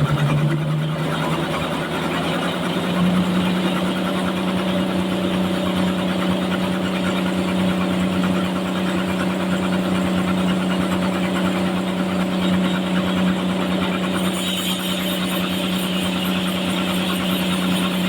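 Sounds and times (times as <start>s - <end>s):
sawmill machine hum: 0.0s - 18.0s
high hissing whine: 14.0s - 18.0s.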